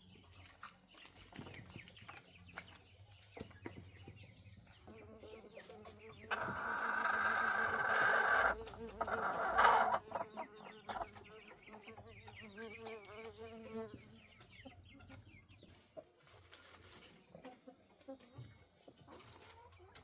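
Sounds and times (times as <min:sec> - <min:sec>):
hen clucking: 0:05.6 - 0:12.5.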